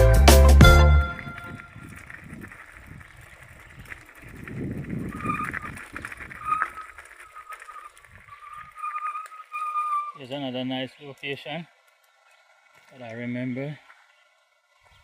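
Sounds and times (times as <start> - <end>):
low rumbling on microphone: 1.1 - 7.0
bird calling: 1.2 - 15.0.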